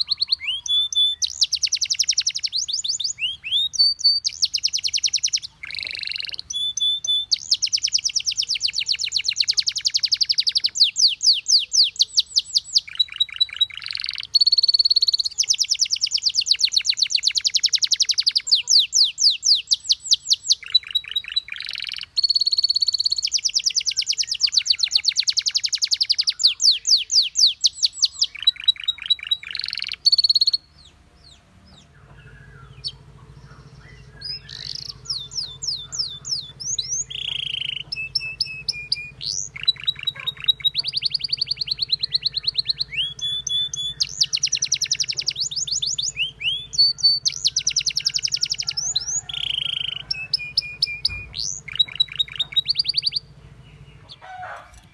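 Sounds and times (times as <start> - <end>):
canary singing trills and whistles: 0.0 - 54.9.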